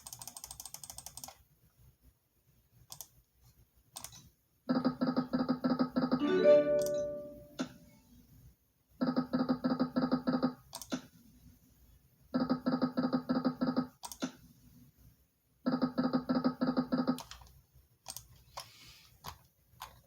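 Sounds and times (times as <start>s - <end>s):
slot machine click: 6.2s - 7.8s
slot machine pulsing electronic tone: 6.2s - 7.8s.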